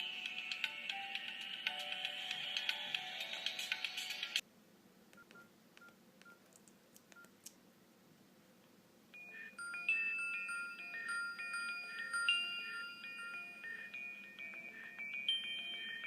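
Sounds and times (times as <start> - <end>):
bell-like electronic ringtone: 0.0 - 4.4, 9.2 - 16.0
electronic ringtone: 0.0 - 4.4, 9.2 - 16.0.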